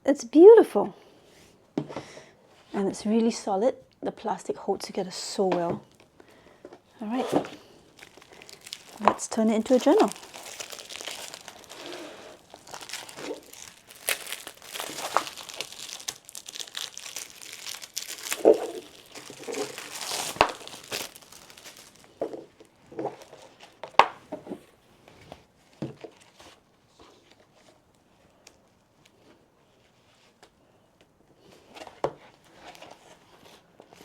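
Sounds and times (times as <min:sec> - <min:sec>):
wrapping crinkling and tearing: 0:07.0 - 0:24.2.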